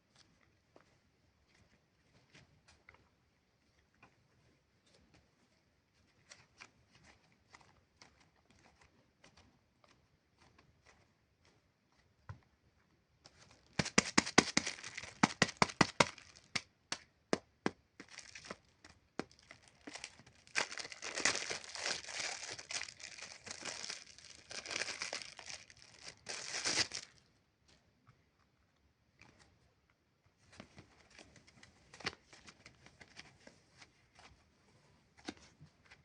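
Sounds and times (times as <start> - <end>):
slime crackling: 13.8 - 16.6, 18.0 - 27.1.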